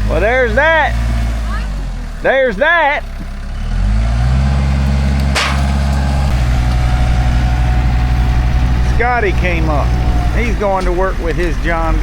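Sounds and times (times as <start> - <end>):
tractor diesel engine revving: 0.0 - 12.0
sharp bang: 5.3 - 7.6.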